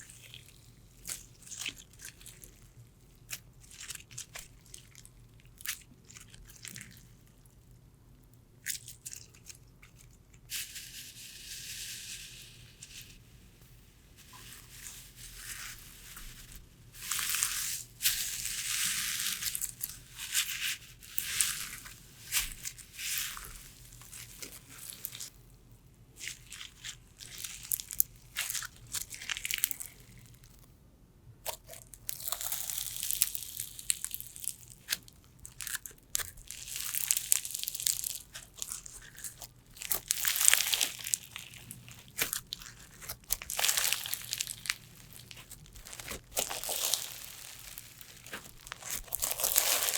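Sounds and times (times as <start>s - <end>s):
slime crackling and popping: 14.3s - 25.3s, 26.2s - 30.6s, 31.4s - 49.9s.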